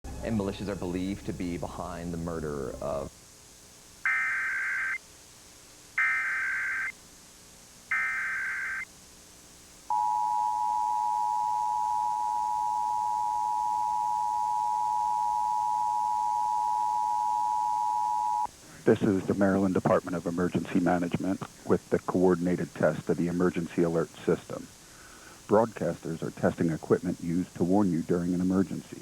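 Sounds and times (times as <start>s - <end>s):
data tone bursts: 4.1s - 5.0s, 6.0s - 6.9s, 7.9s - 8.9s, 9.9s - 18.5s
two-tone attention signal: 9.9s - 18.5s.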